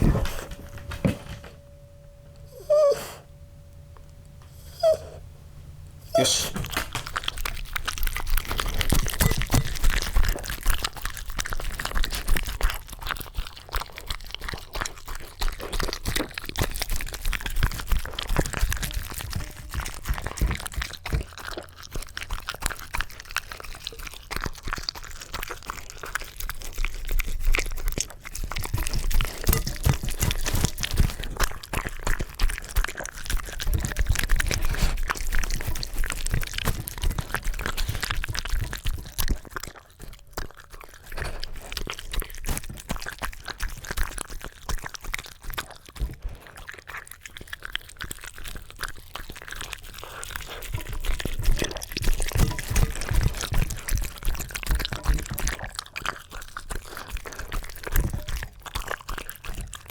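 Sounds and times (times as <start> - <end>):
dog crunching and chewing: 0.0 - 5.2, 5.9 - 59.9
faint steady hum: 0.0 - 12.4.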